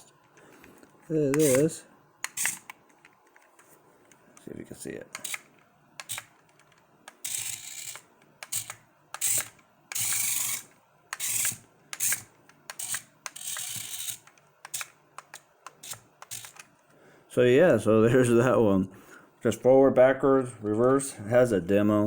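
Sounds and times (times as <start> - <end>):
tiny electric motors whirring: 1.3 - 2.7, 7.1 - 14.9, 15.7 - 16.6.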